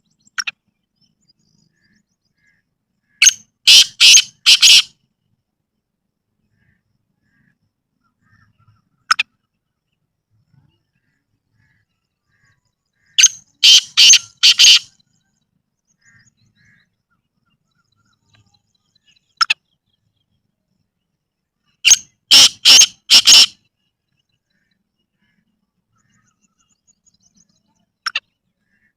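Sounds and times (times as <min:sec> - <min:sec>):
bird calling harshly: 0:03.1 - 0:04.9, 0:13.1 - 0:14.9, 0:21.8 - 0:23.6.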